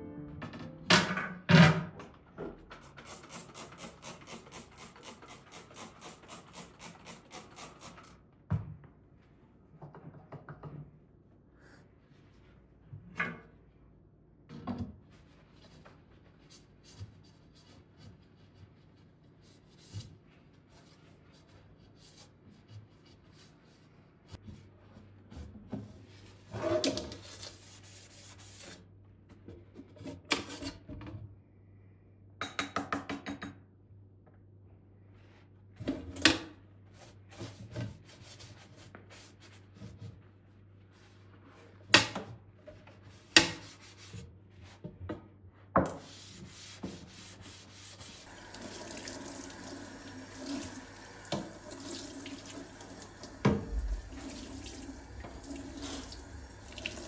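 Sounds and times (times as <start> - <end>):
tap running into sink: 48.3 - 57.0.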